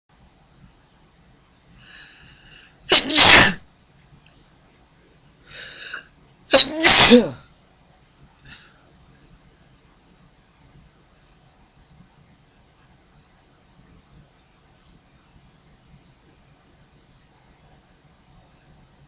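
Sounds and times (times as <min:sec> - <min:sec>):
person sneezing: 0:02.9 - 0:03.6, 0:05.5 - 0:07.4.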